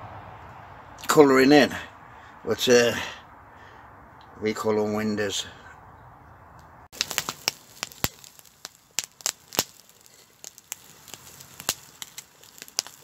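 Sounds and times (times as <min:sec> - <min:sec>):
fire popping and snapping: 0:06.9 - 0:13.0
wood fire crackling: 0:06.9 - 0:13.0
low hiss of fire: 0:07.0 - 0:13.0.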